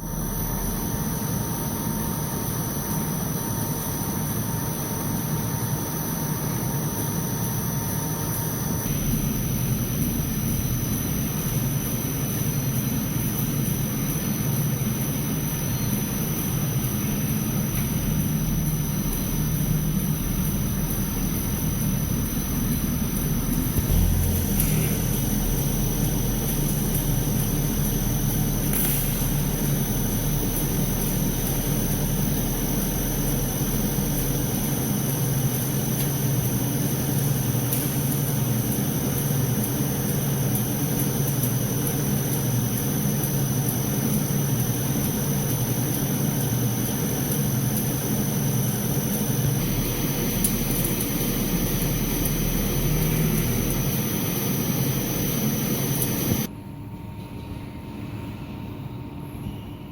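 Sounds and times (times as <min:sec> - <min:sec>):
welding machine humming: 0:00.0 - 0:56.5
constant hiss: 0:08.9 - 0:56.5.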